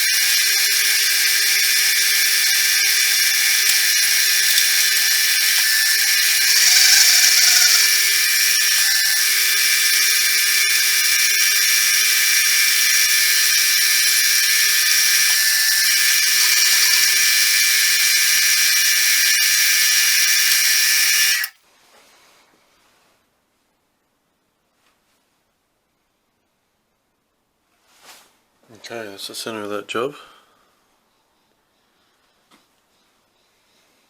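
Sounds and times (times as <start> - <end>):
milling machine spindle whine: 0.0 - 21.5.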